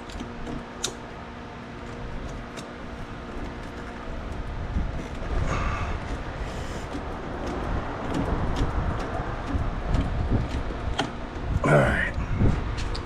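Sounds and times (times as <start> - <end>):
low rumble: 3.9 - 13.0.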